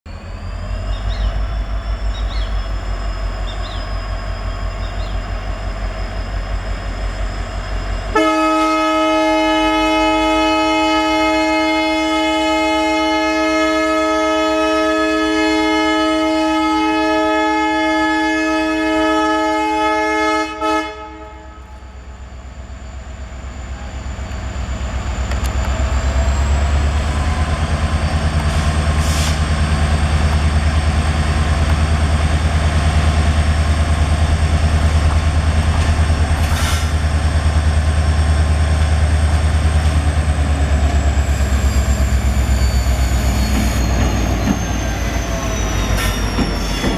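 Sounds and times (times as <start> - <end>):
locomotive engine rumbling: 0.1 - 46.9
locomotive horn chord: 8.1 - 22.0.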